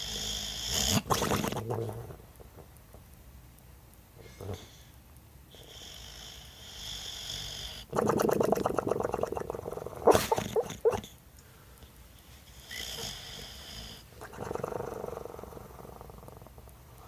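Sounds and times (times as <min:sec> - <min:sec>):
dog snoring: 0:00.0 - 0:02.7, 0:05.5 - 0:11.1, 0:12.6 - 0:17.0
dog snorting: 0:00.0 - 0:02.7, 0:05.6 - 0:11.1, 0:12.6 - 0:16.7.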